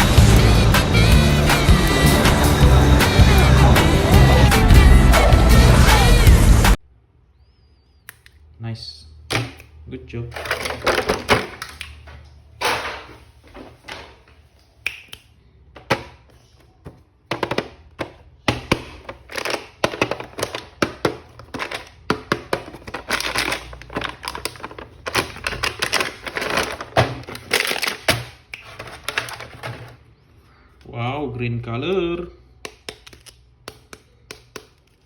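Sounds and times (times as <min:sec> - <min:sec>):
plastic toys clicking and rustling: 0:10.3 - 0:12.2, 0:17.3 - 0:30.0.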